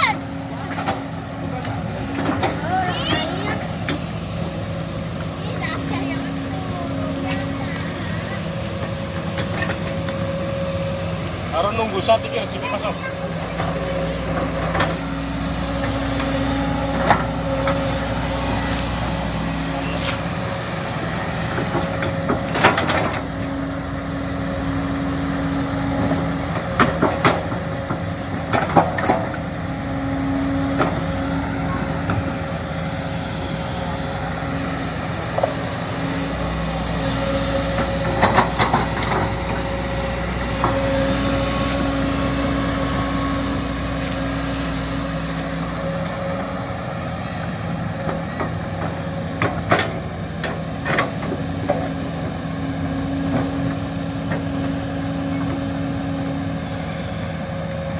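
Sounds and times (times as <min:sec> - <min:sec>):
excavator engine drone: 0:00.0 - 0:57.9.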